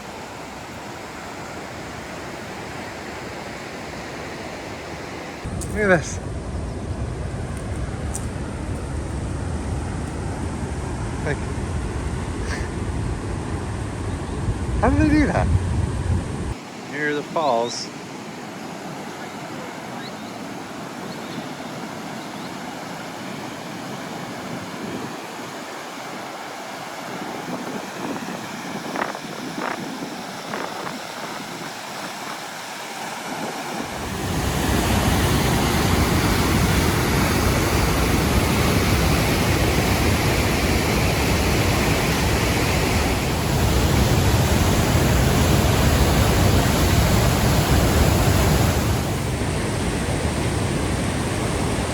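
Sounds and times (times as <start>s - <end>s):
waterfall rushing: 16.6s - 51.9s.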